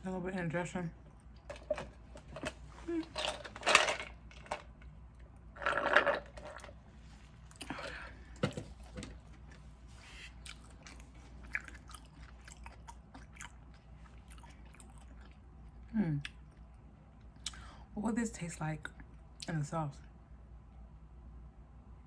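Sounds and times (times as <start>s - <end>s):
person chewing with smacking clicks: 10.4s - 15.5s.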